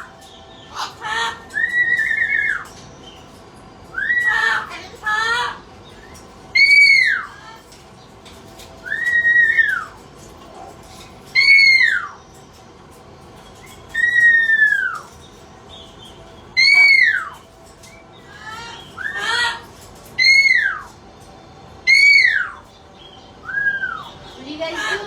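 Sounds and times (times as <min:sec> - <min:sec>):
parrot whistled call: 0:00.0 - 0:03.2, 0:03.9 - 0:07.6, 0:08.8 - 0:10.0, 0:11.3 - 0:12.2, 0:13.6 - 0:15.2, 0:16.6 - 0:21.0, 0:21.8 - 0:22.7, 0:23.4 - 0:25.0.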